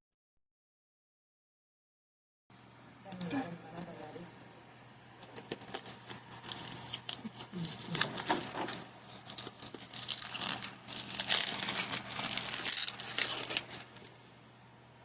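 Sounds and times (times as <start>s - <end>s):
crinkly packaging rustling: 4.9s - 14.2s.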